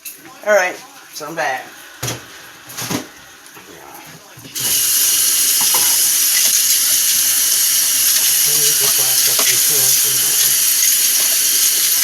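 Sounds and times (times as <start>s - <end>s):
water running into sink: 2.0s - 12.0s.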